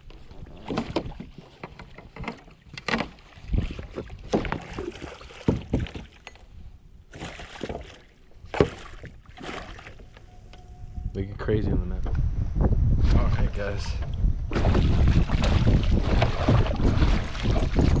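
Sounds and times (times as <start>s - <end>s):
water splashes: 0.0s - 6.2s, 7.1s - 10.1s, 14.5s - 18.0s.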